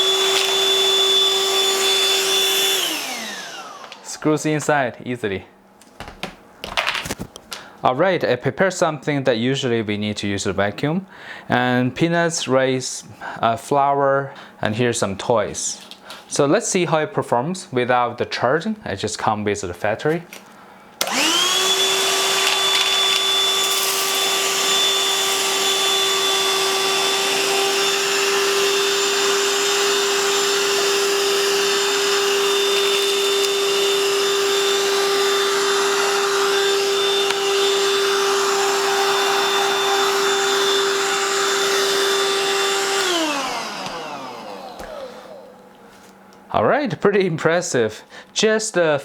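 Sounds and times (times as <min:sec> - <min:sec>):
vacuum motor spinning down: 0:00.0 - 0:04.0, 0:21.0 - 0:45.7
handheld vacuum running: 0:00.0 - 0:04.2, 0:21.0 - 0:45.7.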